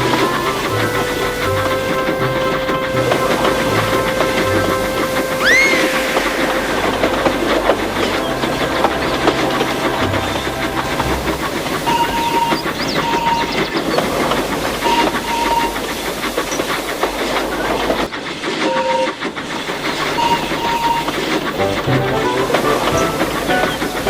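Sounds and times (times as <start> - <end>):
steam whistle toots: 0.0 - 13.6, 20.1 - 24.0
steam locomotive chuffing: 0.0 - 24.0
wheel clatter on rails: 0.0 - 24.0.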